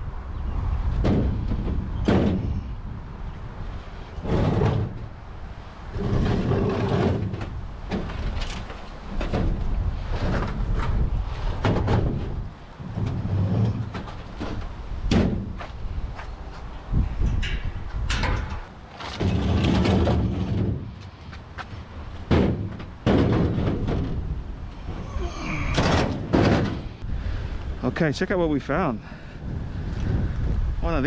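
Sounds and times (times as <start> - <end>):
sharp slamming impacts: 1.0 - 2.7, 11.6 - 15.6, 22.2 - 24.3, 25.0 - 27.0
scrap being handled and loaded: 5.9 - 17.3, 18.1 - 27.0.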